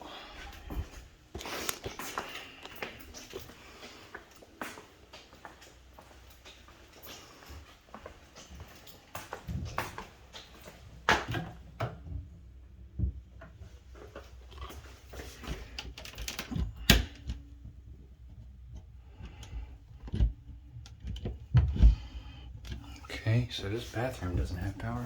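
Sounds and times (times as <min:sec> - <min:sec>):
footsteps: 0:00.1 - 0:11.2, 0:23.4 - 0:25.0.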